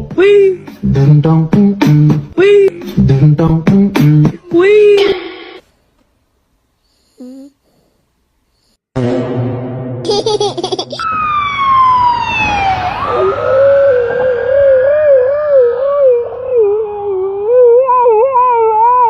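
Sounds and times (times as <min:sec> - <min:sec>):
tone sliding downward: 0:11.0 - 0:17.8
dog howling: 0:13.1 - 0:19.0.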